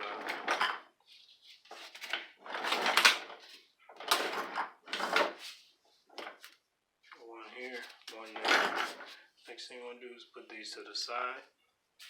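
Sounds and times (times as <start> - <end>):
metal parts scraping and clattering: 1.7 - 5.6, 8.1 - 9.2.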